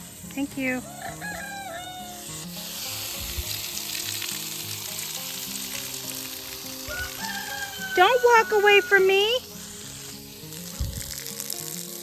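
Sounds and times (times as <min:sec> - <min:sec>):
soft background music: 0:00.0 - 0:12.0
water rushing from a hose: 0:00.0 - 0:12.0.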